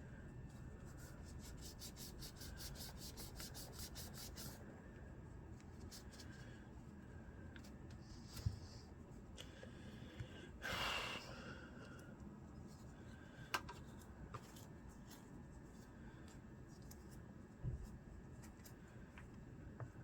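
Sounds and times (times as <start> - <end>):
faint clicks and taps of metal parts: 13.4 - 14.6.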